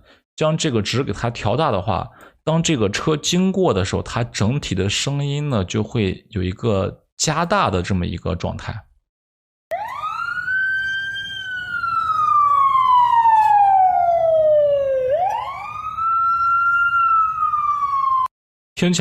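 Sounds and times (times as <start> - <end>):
siren-like wailing tone: 9.7 - 18.3.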